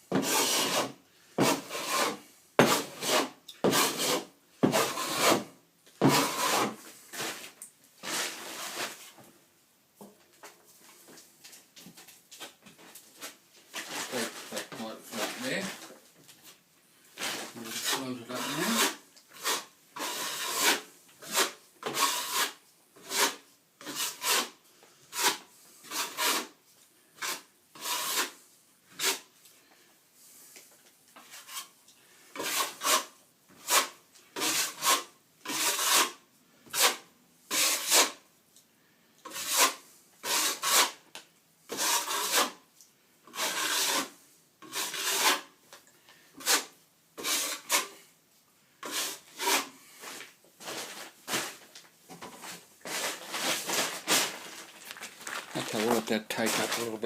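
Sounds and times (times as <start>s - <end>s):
trowel scraping plaster: 0.1s - 9.1s, 13.2s - 15.9s, 17.2s - 26.6s, 27.2s - 29.3s, 31.2s - 38.2s, 39.2s - 41.0s, 41.7s - 42.7s, 43.3s - 45.6s, 46.4s - 48.1s, 48.8s - 51.6s, 52.2s - 57.0s.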